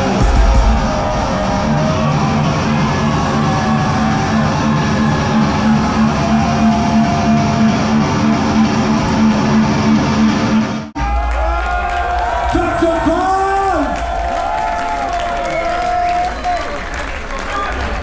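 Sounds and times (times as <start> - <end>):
metal band playing live: 0.0 - 10.8
distorted electric guitars: 0.0 - 10.9.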